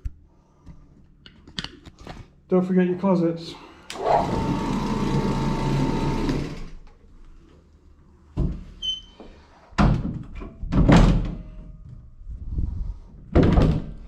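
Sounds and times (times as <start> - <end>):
machine winding down: 3.9 - 6.8.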